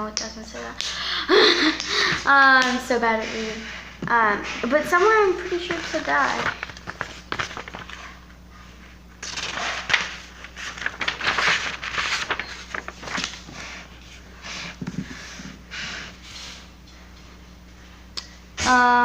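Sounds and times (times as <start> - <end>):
rustling and handling noises: 4.1 - 15.7.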